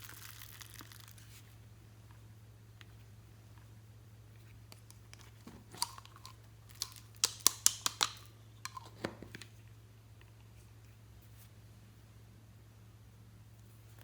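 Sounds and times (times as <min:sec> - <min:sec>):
low steady hum: 0:00.0 - 0:14.0
slime crackling pops: 0:06.7 - 0:08.3.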